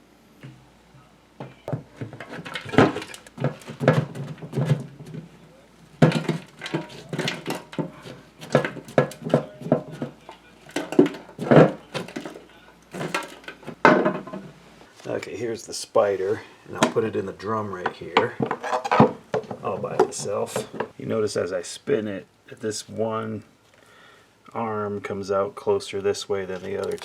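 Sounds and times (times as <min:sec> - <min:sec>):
metal parts clanking and rattling: 0:01.7 - 0:05.4, 0:06.0 - 0:14.5.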